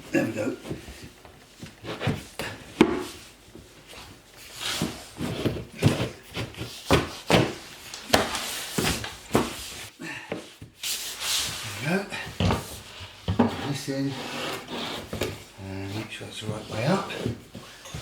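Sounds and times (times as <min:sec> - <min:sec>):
board knocking and scraping: 0:04.8 - 0:09.9.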